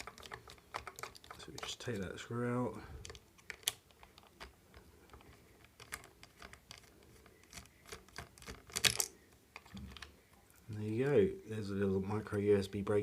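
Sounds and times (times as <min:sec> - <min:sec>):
plastic parts clicking apart: 0:03.0 - 0:10.1.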